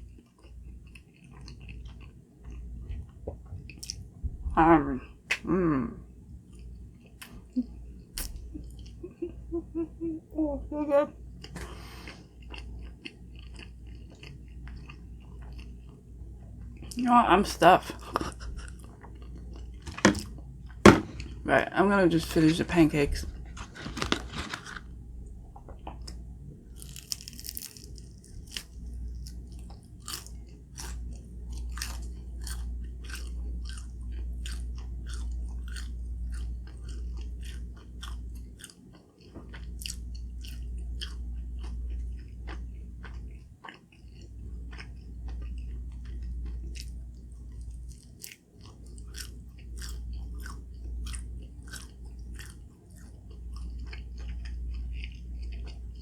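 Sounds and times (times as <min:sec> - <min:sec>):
person chewing crunchy food: 0:00.0 - 0:04.1, 0:11.4 - 0:17.0, 0:17.9 - 0:21.4, 0:23.3 - 0:56.0.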